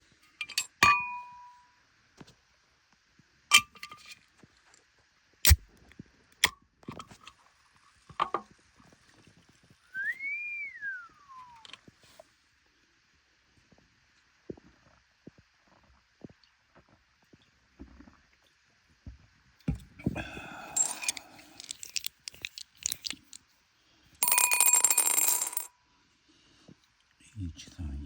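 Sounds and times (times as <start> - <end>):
glass clinking: 0.4 - 1.6, 20.5 - 23.4, 24.2 - 25.7
glassware and ice knocking: 0.5 - 1.5, 20.7 - 22.1
whistled note: 10.0 - 11.7.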